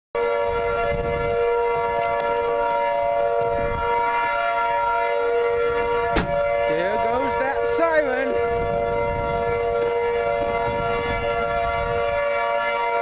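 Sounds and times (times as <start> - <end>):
tornado warning siren: 0.2 - 13.0.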